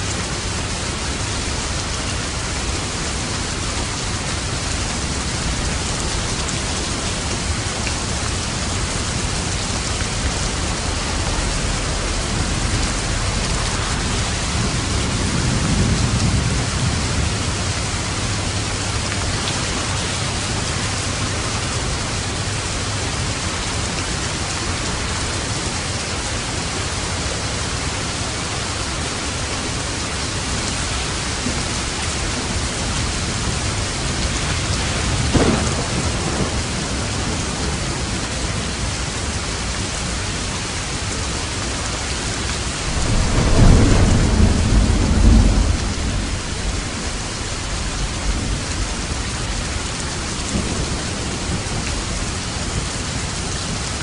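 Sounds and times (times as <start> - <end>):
heavy rain: 0.0 - 54.0
thunder rumbling: 0.4 - 25.2, 29.4 - 38.9, 42.2 - 54.0
thunder crack: 9.9 - 17.6, 34.1 - 37.6, 42.8 - 49.6.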